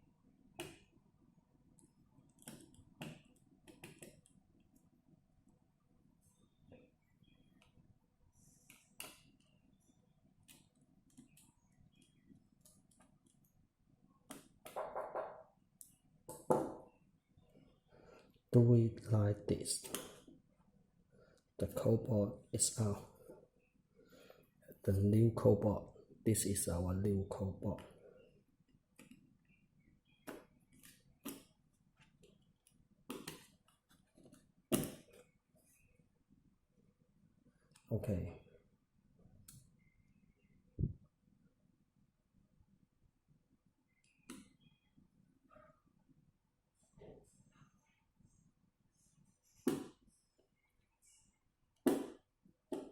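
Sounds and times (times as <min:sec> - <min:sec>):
small clicks of tablet parts: 0:08.6 - 0:09.6, 0:10.4 - 0:13.6
knocks on workbench: 0:14.8 - 0:15.4.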